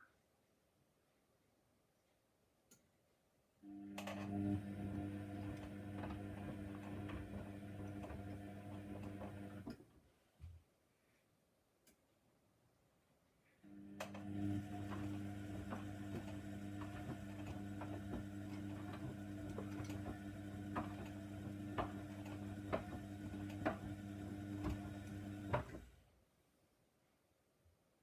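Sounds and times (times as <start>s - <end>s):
washing machine motor humming: 3.7s - 9.7s, 13.7s - 26.0s.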